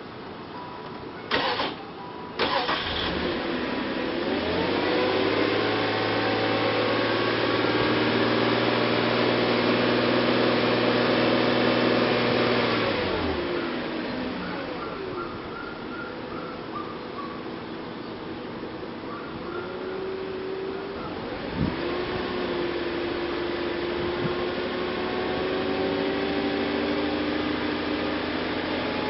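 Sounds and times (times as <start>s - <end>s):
car engine starter cranking: 1.3s - 1.8s, 2.4s - 3.7s.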